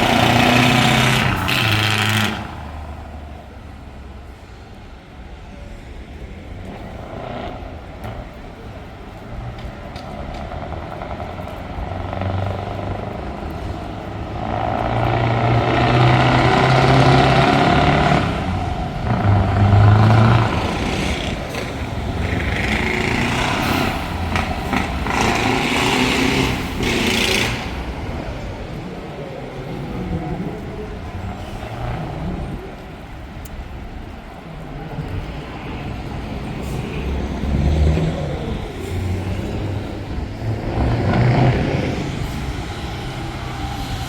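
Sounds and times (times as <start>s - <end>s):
truck engine revving hard: 0.0s - 3.3s, 10.5s - 28.8s, 35.9s - 44.0s.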